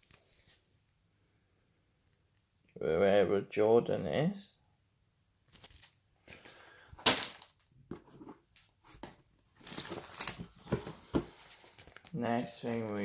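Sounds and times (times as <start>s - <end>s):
plastic wrappers crinkling: 7.0s - 7.7s, 9.6s - 13.0s.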